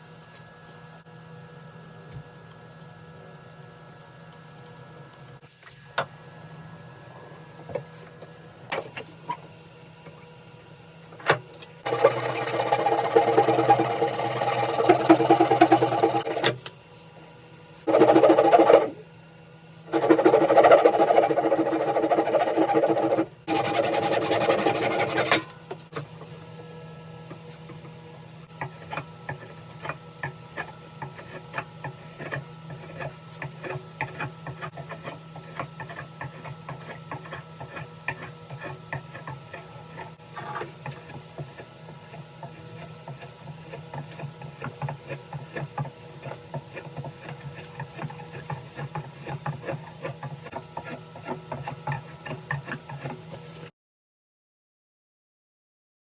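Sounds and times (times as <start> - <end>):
steady low hum: 0.0 - 53.5
small electric power tool running: 11.8 - 16.5
ticks and scrapes: 11.8 - 16.6, 30.6 - 53.7.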